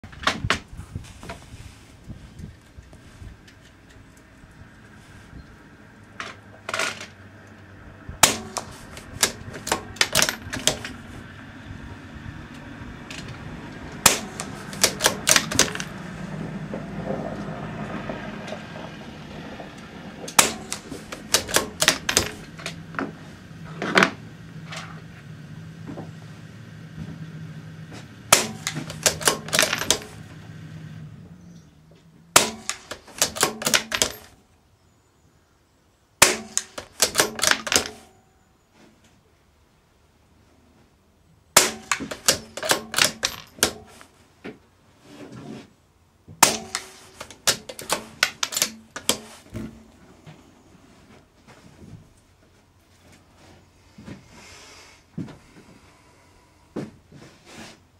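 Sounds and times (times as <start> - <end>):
suppressed rifle shots: 20.3 - 22.4, 28.3 - 30.2
rifle bolt clicking: 28.4 - 30.1, 32.4 - 34.2.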